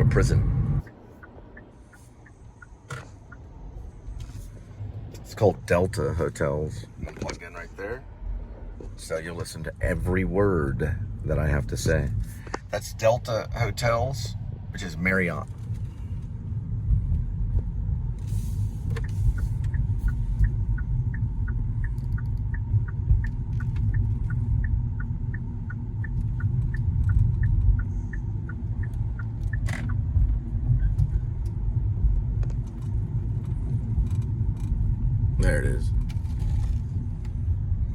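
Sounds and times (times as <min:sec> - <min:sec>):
car interior road rumble: 0:00.0 - 0:37.9
regular ticking: 0:00.8 - 0:04.1, 0:18.8 - 0:35.8.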